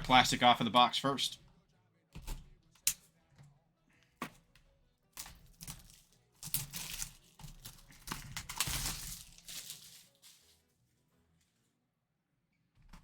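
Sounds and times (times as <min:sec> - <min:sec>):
plastic shrink-wrap tearing: 0:05.2 - 0:10.5.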